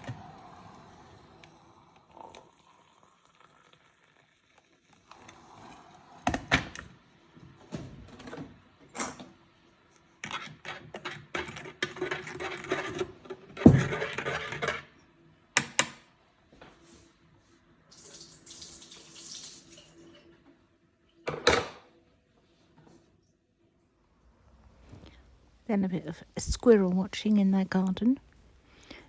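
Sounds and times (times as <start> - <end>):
water running into sink: 17.9 - 20.2.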